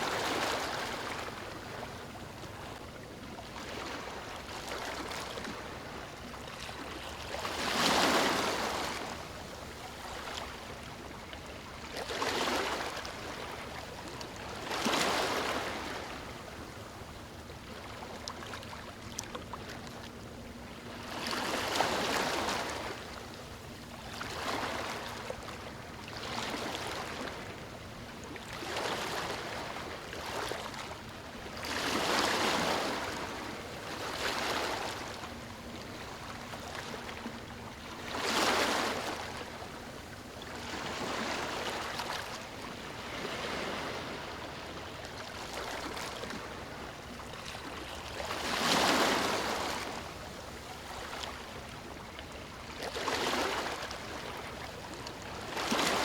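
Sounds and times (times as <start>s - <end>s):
ocean waves breaking on beach: 0.0s - 2.6s, 3.6s - 10.9s, 31.5s - 51.5s, 55.4s - 56.0s.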